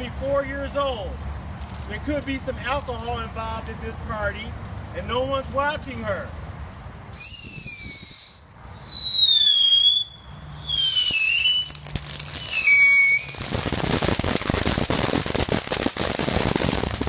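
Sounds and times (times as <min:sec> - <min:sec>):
whistling firework: 0:07.1 - 0:17.0
firework crackling pops: 0:07.2 - 0:17.0.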